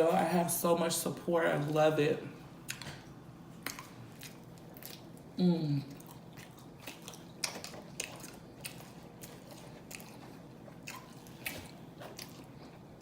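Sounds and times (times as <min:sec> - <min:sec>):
person chewing food: 0:02.6 - 0:13.0.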